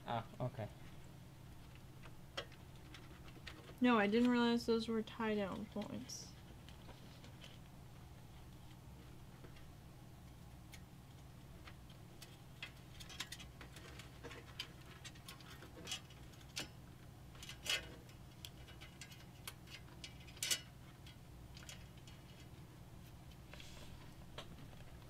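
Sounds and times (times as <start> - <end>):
steady low hum: 0.0 - 25.0
cables clicking in computer case: 10.6 - 22.5.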